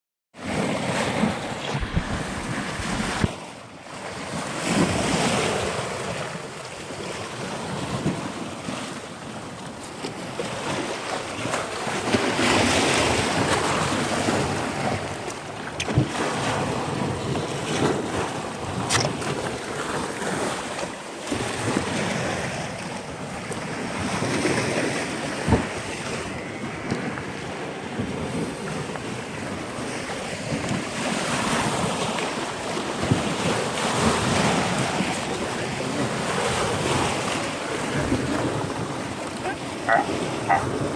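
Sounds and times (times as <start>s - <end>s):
sea surf rushing: 0.4s - 6.4s, 10.8s - 40.9s
wind buffeting microphone: 0.5s - 3.5s, 21.3s - 40.9s.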